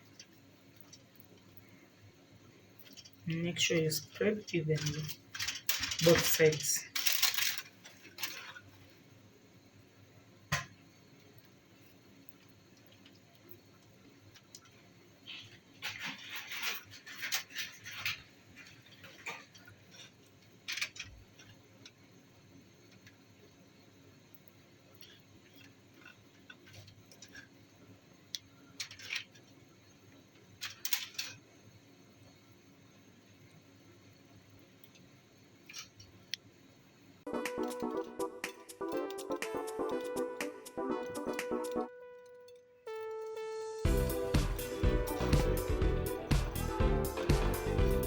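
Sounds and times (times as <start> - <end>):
clicks and light scrapes: 4.1 - 9.0, 12.3 - 22.0, 24.9 - 27.6, 28.3 - 29.6.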